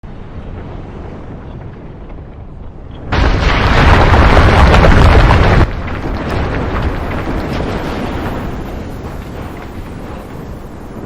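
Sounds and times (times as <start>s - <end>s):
volcano rumbling: 0.6s - 11.0s.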